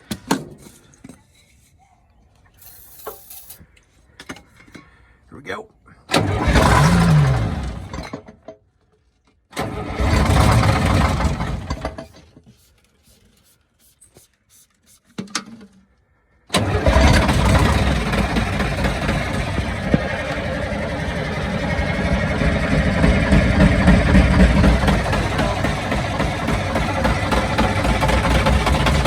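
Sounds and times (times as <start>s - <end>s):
diesel engine cranking: 6.1s - 8.4s, 9.5s - 14.1s, 16.5s - 29.0s.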